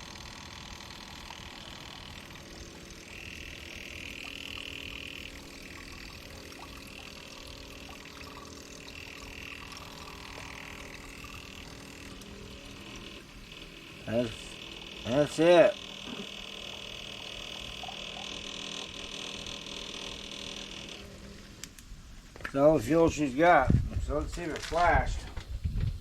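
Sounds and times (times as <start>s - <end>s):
liquid pouring into a jug: 1.1s - 16.6s.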